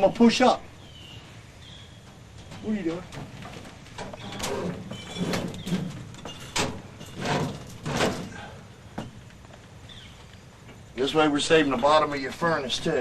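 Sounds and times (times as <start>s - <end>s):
heavy cabinet scraping and knocking: 2.4s - 9.2s.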